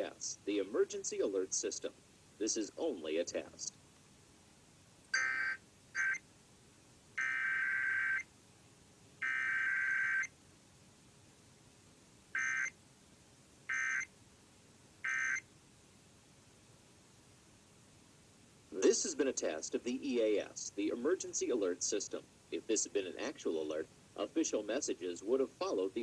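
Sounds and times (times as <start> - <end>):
buzzy digital data bursts: 5.1 - 6.2.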